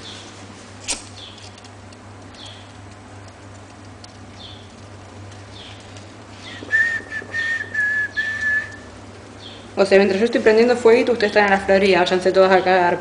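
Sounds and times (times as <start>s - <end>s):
soft ticks: 1.6s - 6.3s
person whistling a high note: 6.5s - 8.8s.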